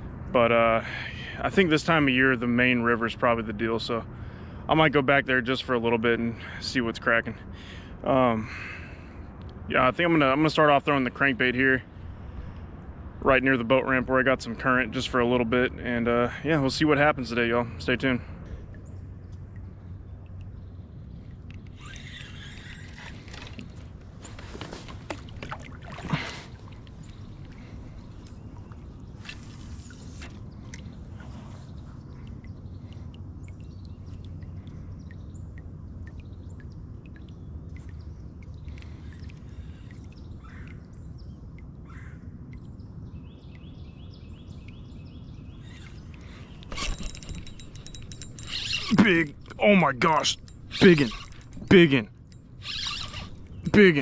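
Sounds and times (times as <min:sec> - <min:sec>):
gear handled aboard boat: 0:21.5 - 0:32.3, 0:45.6 - 0:54.0
birds chirping: 0:43.2 - 0:54.0.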